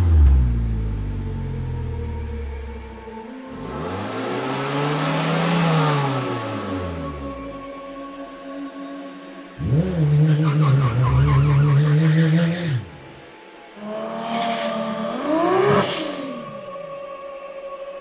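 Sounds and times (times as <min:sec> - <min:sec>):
car engine steady note: 0:00.0 - 0:08.4.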